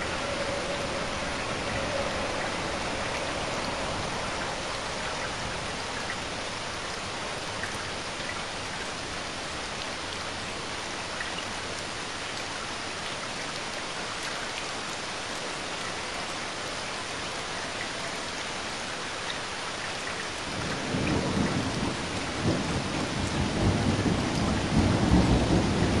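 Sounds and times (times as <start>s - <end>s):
heavy rain falling: 0.0s - 26.0s
thunder rumbling: 20.6s - 26.0s.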